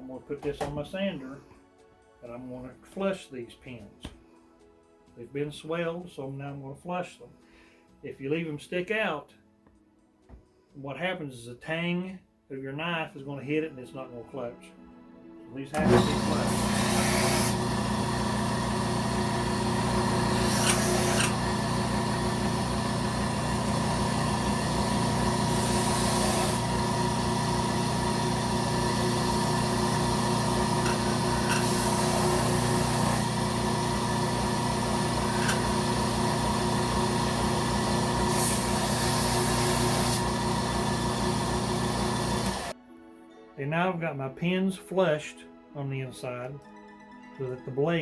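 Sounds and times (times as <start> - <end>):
grinding hiss on sander belt: 15.8 - 18.5, 19.1 - 42.7
belt sander running: 15.8 - 42.7.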